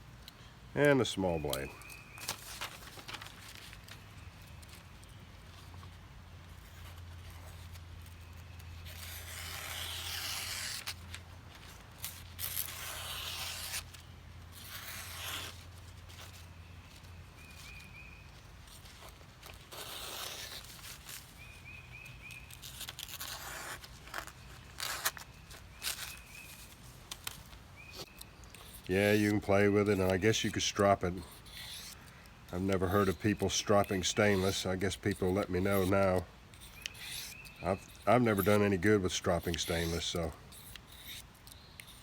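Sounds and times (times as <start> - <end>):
knife blade scraping material: 8.9 - 11.0, 12.0 - 13.9, 14.6 - 15.6, 19.7 - 20.8, 28.5 - 42.0.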